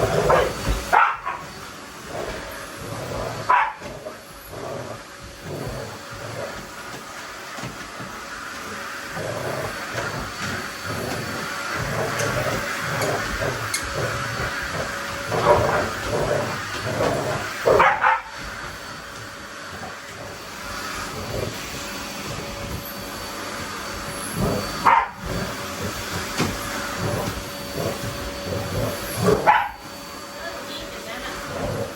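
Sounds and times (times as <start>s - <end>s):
vacuum cleaner running: 0.0s - 31.9s
dog barking: 0.3s - 1.5s, 3.5s - 3.9s, 17.8s - 18.4s, 24.8s - 25.2s, 29.3s - 29.8s.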